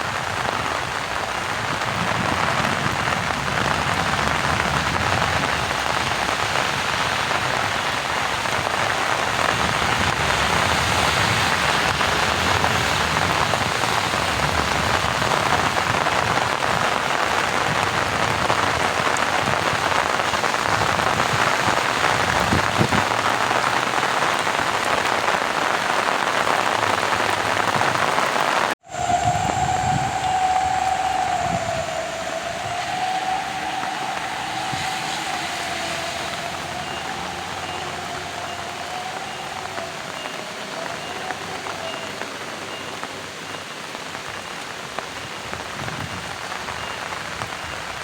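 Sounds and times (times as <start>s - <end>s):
rain falling on flooded fields: 0.0s - 48.0s.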